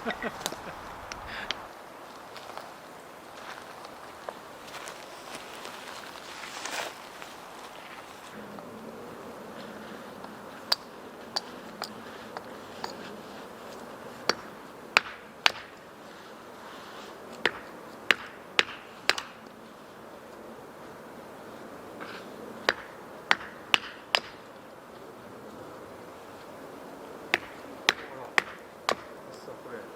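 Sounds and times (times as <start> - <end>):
wood fire crackling: 0.0 - 29.9.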